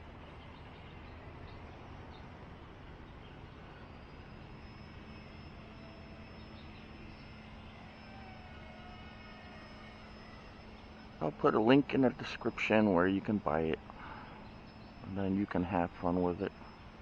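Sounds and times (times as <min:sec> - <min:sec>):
outdoor background noise: 0:00.0 - 0:17.0
model plane motor whine: 0:03.2 - 0:13.1.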